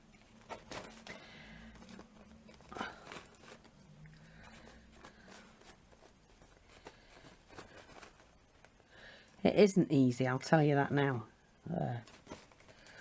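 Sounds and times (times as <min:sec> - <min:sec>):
paper napkin rustling: 0:00.0 - 0:08.9, 0:11.8 - 0:13.0
low room hum: 0:00.0 - 0:13.0.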